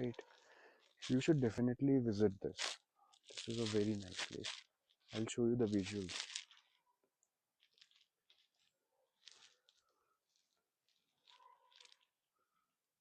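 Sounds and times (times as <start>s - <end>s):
faint high-pitched chirps: 7.7s - 12.8s.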